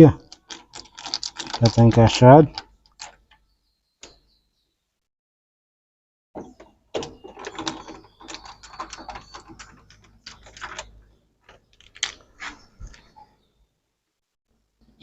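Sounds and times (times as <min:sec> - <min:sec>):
plastic and metal parts rattling: 0:00.2 - 0:03.4, 0:07.0 - 0:12.3.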